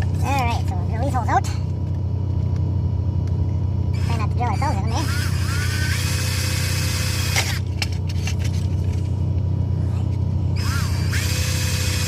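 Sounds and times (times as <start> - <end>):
low rumble: 0.0 - 12.0
electric drill whining: 3.9 - 8.1, 10.5 - 12.0.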